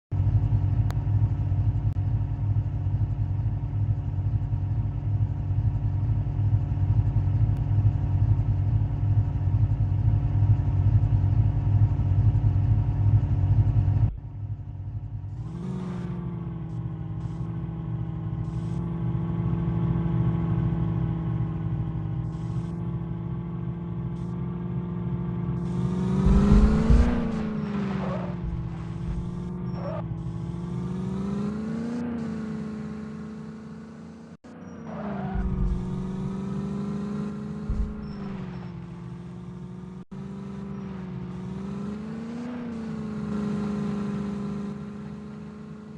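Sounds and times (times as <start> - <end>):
car engine running: 0.0 - 45.9
engine pulling under load: 25.0 - 30.6.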